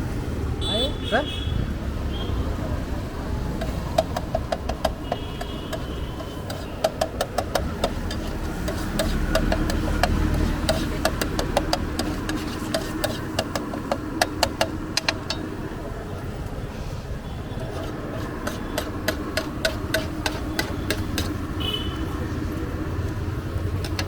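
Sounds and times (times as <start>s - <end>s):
utensil scraping a metal pan: 3.6s - 15.5s, 17.6s - 21.8s, 23.7s - 24.0s.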